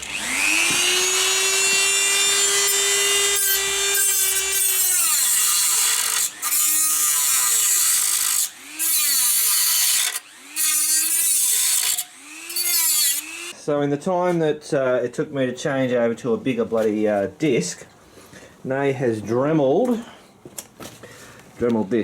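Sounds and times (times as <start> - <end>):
rotary tool cutting metal: 0.0 - 13.5.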